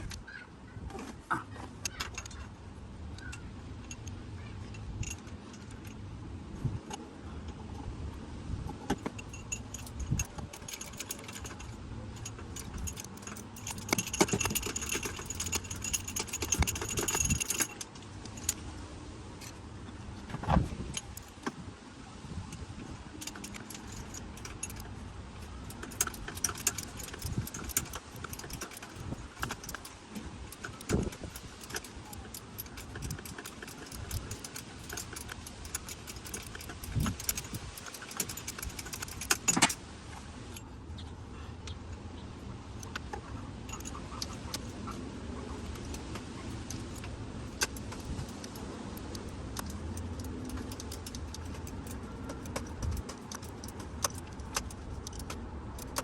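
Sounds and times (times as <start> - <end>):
metal tools clinking and rattling: 1.8 - 2.4, 3.2 - 6.0, 8.9 - 18.6, 20.9 - 21.6, 22.5 - 39.8, 43.7 - 56.0
sharp clicks: 23.2 - 39.8, 45.6 - 56.0.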